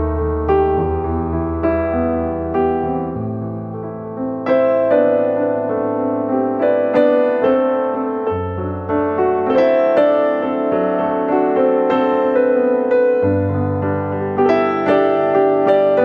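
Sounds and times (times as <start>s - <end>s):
gentle piano piece: 0.0s - 16.0s.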